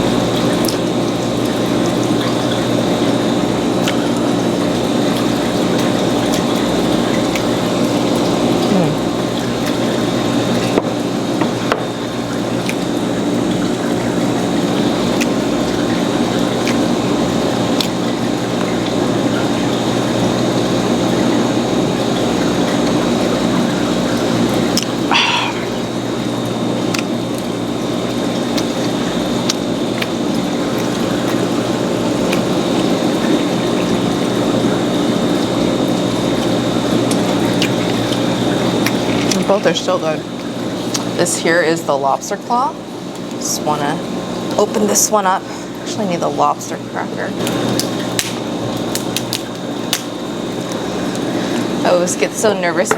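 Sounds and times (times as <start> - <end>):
wet chewing and squelching: 0.4 - 3.2, 3.8 - 19.6, 24.2 - 39.6, 40.4 - 41.2.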